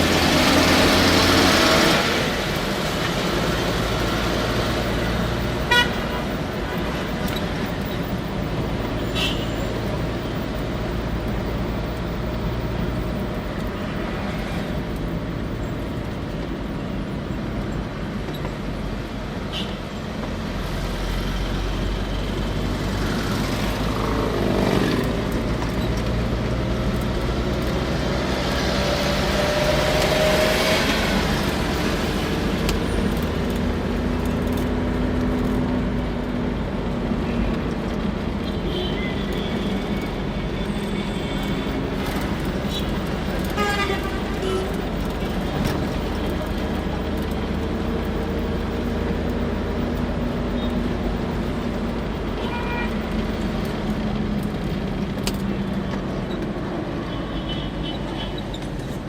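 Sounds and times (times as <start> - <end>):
engine revving: 0.0 - 5.4, 20.7 - 35.7
vehicle passing close by: 0.0 - 5.4, 27.4 - 33.2
city traffic rumble: 0.0 - 59.0.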